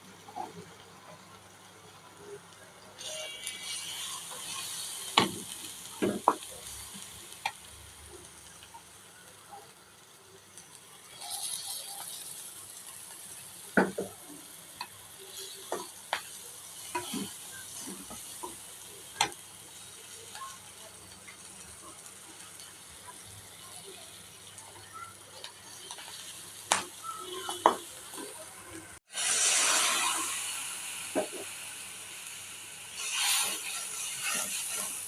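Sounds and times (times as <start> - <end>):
food sizzling in a pan: 0.0 - 35.0
spatula scraping a pan: 3.0 - 7.2, 11.0 - 21.6, 29.1 - 30.6, 32.9 - 35.0.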